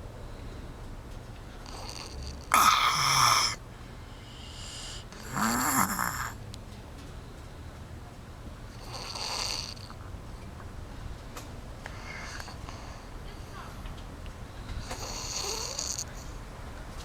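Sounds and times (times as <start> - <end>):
quiet breathing: 0.0 - 16.8
person snoring: 1.7 - 3.6, 4.3 - 6.4, 8.8 - 9.9, 15.0 - 16.1.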